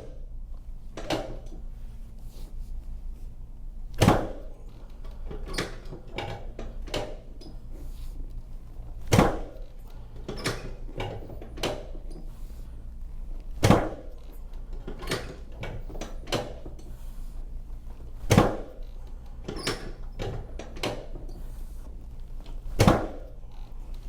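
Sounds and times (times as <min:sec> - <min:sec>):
loud thumps on treatment table: 0:18.3 - 0:18.7.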